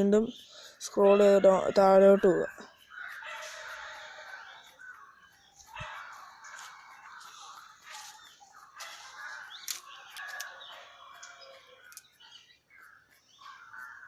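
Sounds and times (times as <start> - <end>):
birds calling: 0.0 - 14.0
sharp clicks: 2.5 - 14.0.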